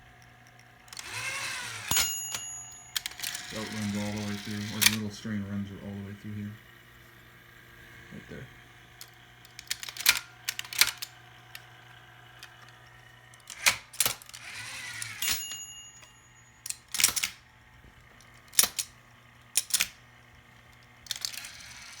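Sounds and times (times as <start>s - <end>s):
typewriter motor humming: 0.0s - 6.5s, 8.9s - 17.5s, 18.1s - 22.0s
typewriter mechanism clacking: 0.8s - 5.1s, 9.0s - 11.7s, 13.4s - 17.4s, 18.4s - 18.9s, 19.5s - 20.0s, 21.0s - 22.0s.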